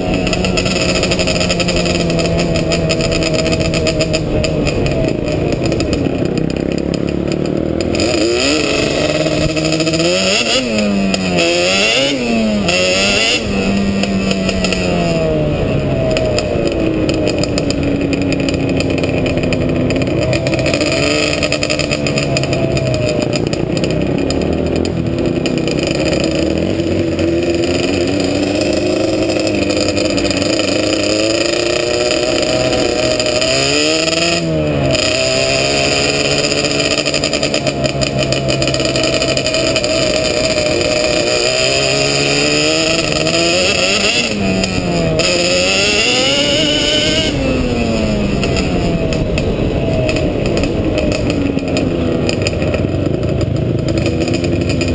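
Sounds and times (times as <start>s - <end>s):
quad engine revving: 0.0s - 54.9s.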